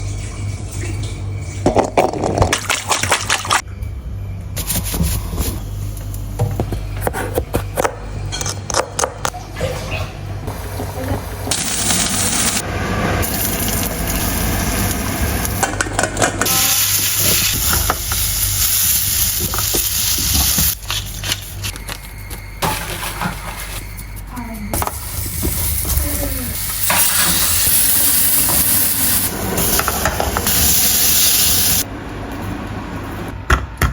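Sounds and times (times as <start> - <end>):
oil sizzling: 10.5 - 21.7, 24.9 - 32.8.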